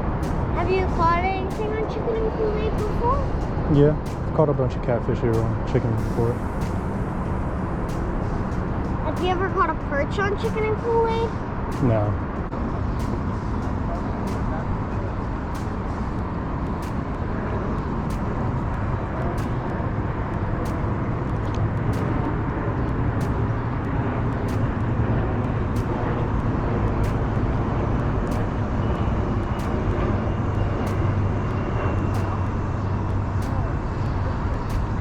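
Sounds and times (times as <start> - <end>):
traffic rumble overhead: 0.0 - 35.0.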